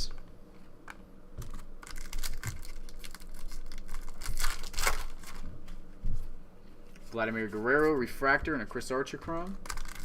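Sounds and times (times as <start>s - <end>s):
trading cards clicking and rustling: 9.3s - 10.0s.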